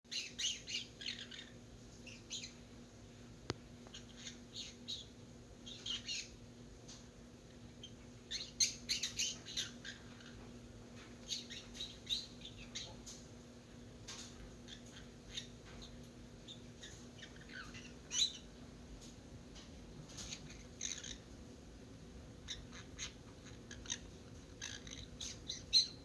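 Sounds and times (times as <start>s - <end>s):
young parrot chirping and squawking: 0.1s - 2.6s, 3.9s - 6.4s, 7.8s - 10.5s, 11.2s - 13.0s, 14.6s - 18.5s, 20.2s - 21.3s, 22.4s - 26.0s.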